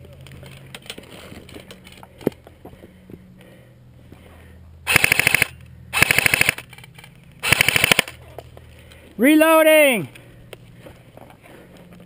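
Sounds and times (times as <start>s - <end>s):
airsoft rifle automatic fire: 4.9s - 6.7s, 7.4s - 8.2s.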